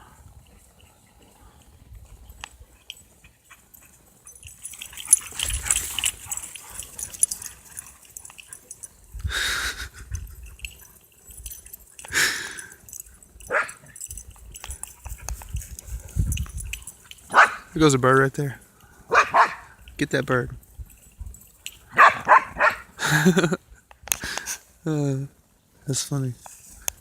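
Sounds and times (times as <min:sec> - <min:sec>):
dogs barking: 0:02.8 - 0:08.9, 0:12.9 - 0:14.1, 0:16.8 - 0:17.8, 0:19.1 - 0:19.8, 0:21.9 - 0:23.0.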